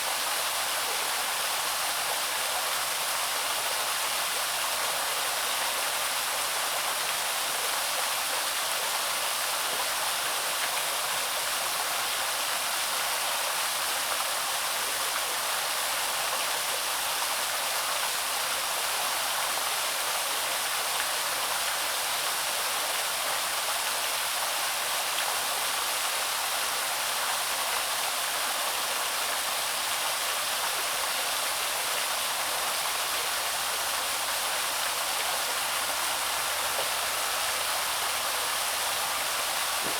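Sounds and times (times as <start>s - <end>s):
waterfall splashing: 19.6s - 39.9s.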